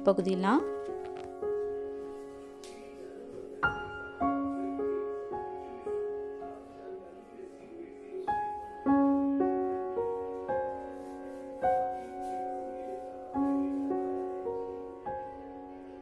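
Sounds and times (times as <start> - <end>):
soft piano melody: 0.0 - 16.0.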